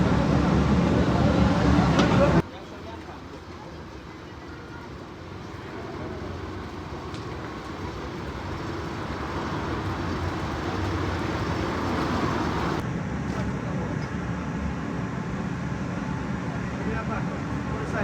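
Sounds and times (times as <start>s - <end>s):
street traffic: 0.0s - 18.0s
vehicle engine running: 5.0s - 12.8s.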